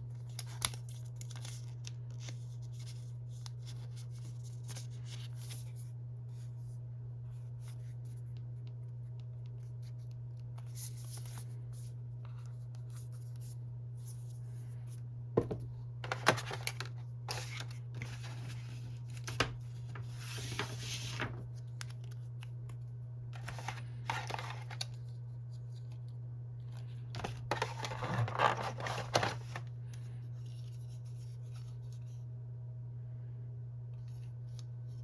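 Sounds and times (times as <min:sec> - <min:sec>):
low electrical hum: 0:00.0 - 0:35.0
packaging rustling and scraping: 0:16.0 - 0:21.5, 0:23.4 - 0:25.0, 0:27.1 - 0:29.7.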